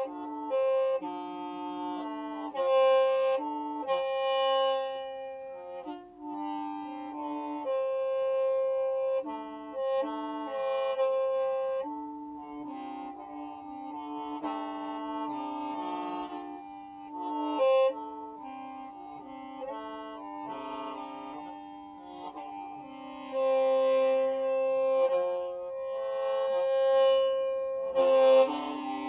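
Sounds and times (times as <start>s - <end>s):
bamboo mouth organ melody: 0.0s - 29.0s.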